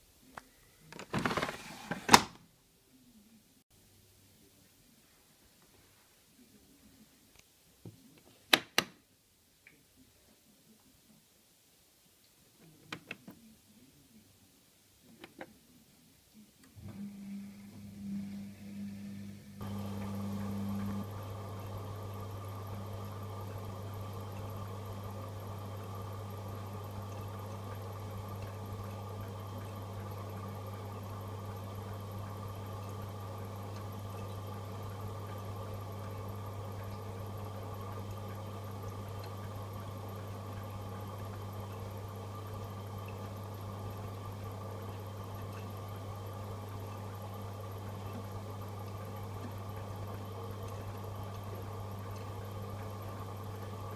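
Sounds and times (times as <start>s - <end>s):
washing machine humming: 16.7s - 53.9s
higher hum: 16.8s - 27.6s.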